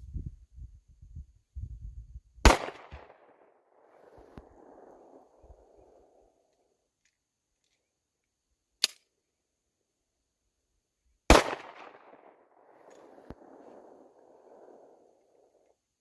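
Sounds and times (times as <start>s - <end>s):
pistol shots with echo: 2.4s - 5.8s, 11.3s - 15.0s.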